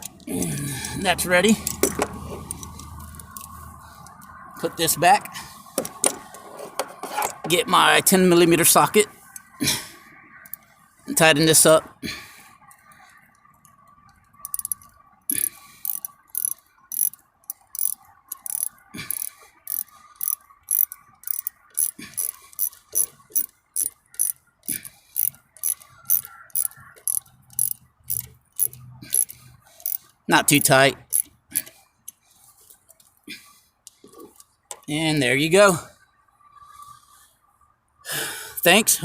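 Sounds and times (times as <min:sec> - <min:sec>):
ratchet wrench clicking: 0:01.6 - 0:04.3, 0:14.4 - 0:30.2, 0:31.0 - 0:32.2.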